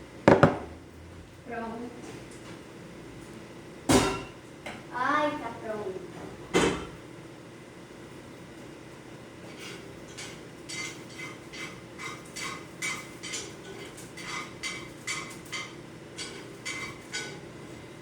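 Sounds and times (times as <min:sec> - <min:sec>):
utensil scraping a dish: 0:09.5 - 0:17.5.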